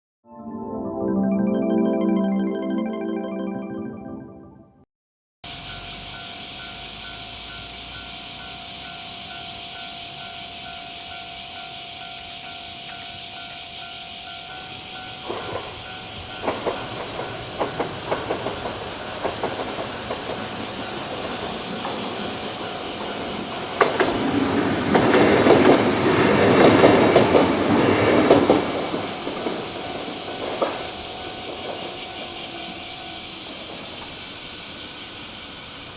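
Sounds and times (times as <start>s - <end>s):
loud steady hiss: 5.5s - 18.1s, 28.7s - 35.9s
level crossing warning bell: 5.5s - 27.4s, 29.3s - 33.7s
train wheels clattering over rails: 14.5s - 35.9s.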